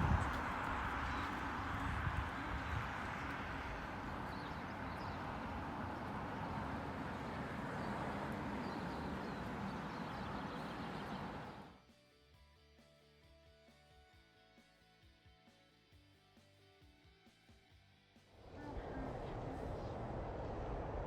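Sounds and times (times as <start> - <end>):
outdoor background noise: 0.0 - 21.0.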